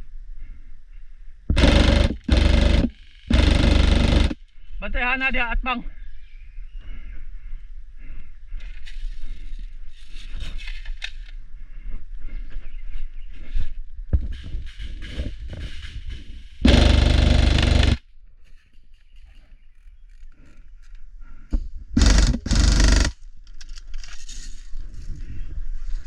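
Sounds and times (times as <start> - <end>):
airsoft guns firing bursts: 1.5 - 4.4, 16.6 - 18.0, 22.0 - 23.2.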